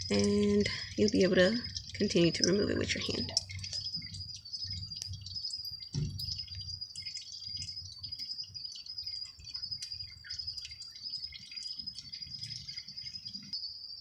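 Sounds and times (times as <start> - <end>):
oil dripping into a pan: 0.0 - 13.7
night insects chirping: 0.0 - 14.0.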